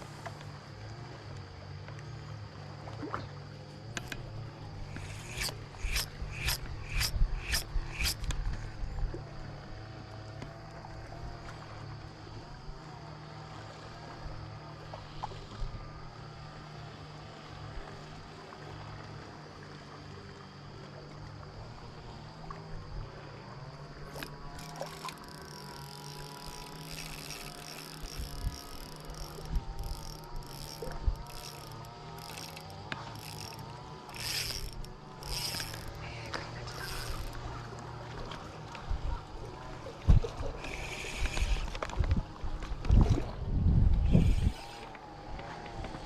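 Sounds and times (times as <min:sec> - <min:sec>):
fishing reel clicking and whirring: 0:03.9 - 0:09.1, 0:24.0 - 0:38.4, 0:40.2 - 0:42.9, 0:43.9 - 0:46.0.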